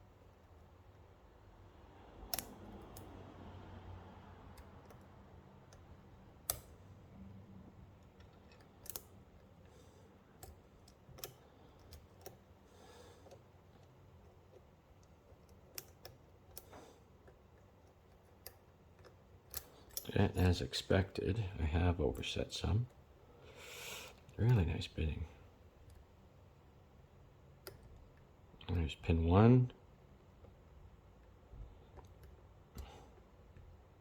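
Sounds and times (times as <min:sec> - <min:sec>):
lock pins clicking: 0:08.0 - 0:09.7, 0:10.3 - 0:12.6.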